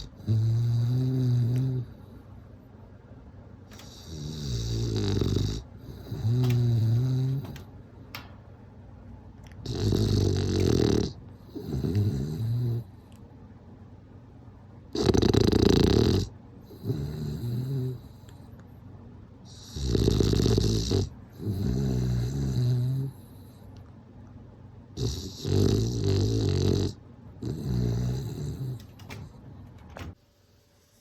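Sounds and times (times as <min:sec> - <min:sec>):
dog snoring: 0:00.0 - 0:02.2, 0:03.7 - 0:07.7, 0:09.6 - 0:13.1, 0:14.9 - 0:18.5, 0:19.5 - 0:23.7, 0:24.9 - 0:28.9.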